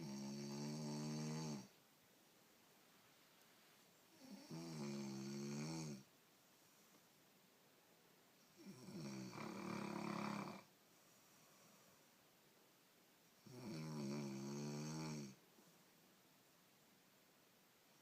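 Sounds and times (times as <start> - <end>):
person snoring: 0.0 - 1.7, 4.2 - 6.1, 8.6 - 10.7, 13.4 - 15.4.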